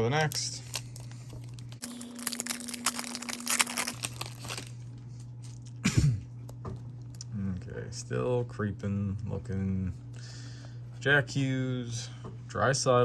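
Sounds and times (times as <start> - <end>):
foil wrapper tearing and crinkling: 0.0 - 5.7.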